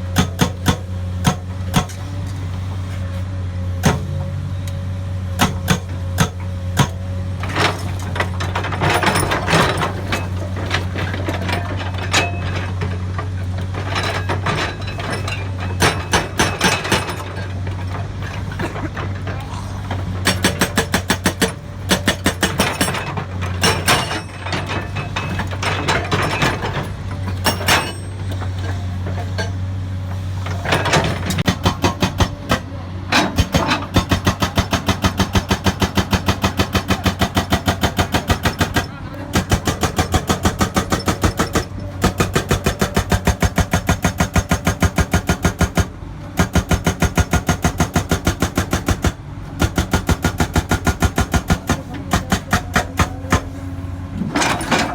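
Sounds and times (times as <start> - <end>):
hydraulic breaker hammer pounding rock: 0.0 - 2.2, 3.8 - 4.2, 5.4 - 29.7, 30.4 - 54.9
excavator engine hum: 0.0 - 54.9.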